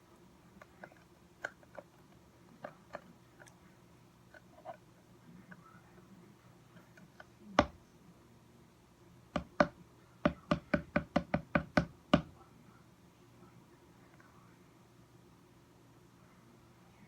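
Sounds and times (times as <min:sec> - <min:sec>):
hard object knocking on hard surface: 0:07.6 - 0:07.8, 0:09.4 - 0:12.3.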